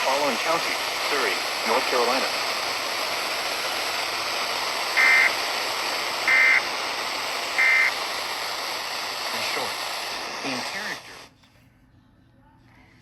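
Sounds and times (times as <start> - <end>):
radio static hiss: 0.0 - 11.3
warbling data tone bursts: 4.9 - 5.4, 6.2 - 6.7, 7.6 - 8.0.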